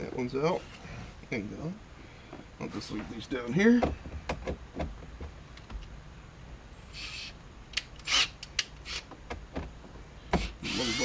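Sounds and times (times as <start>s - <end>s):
soft brushing: 2.6s - 3.5s.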